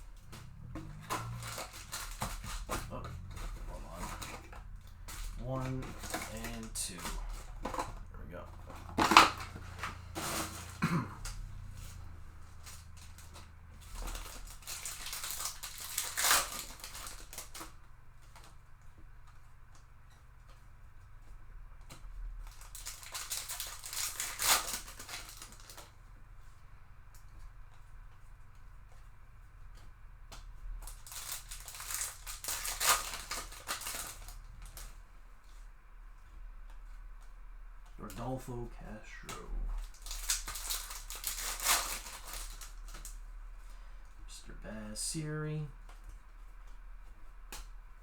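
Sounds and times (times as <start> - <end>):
foil wrapper tearing and crinkling: 0.0 - 8.0, 8.6 - 18.4, 22.4 - 25.9, 30.8 - 34.9, 39.1 - 43.2
card pack rustling: 0.0 - 18.4, 22.5 - 25.9, 30.8 - 35.6, 37.9 - 44.0.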